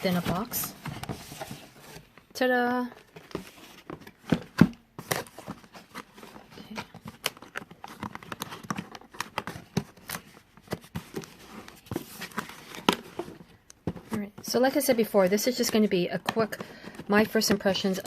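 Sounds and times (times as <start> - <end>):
cardboard box being handled: 0.0 - 2.2, 2.9 - 14.7.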